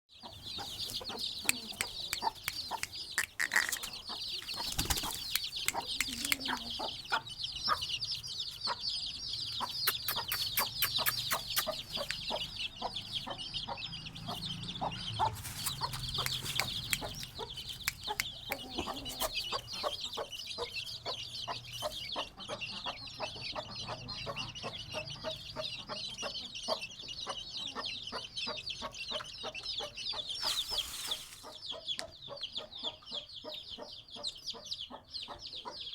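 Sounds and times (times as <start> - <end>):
high-pitched chirping: 0.2 - 21.1
chickens clucking: 0.2 - 35.9.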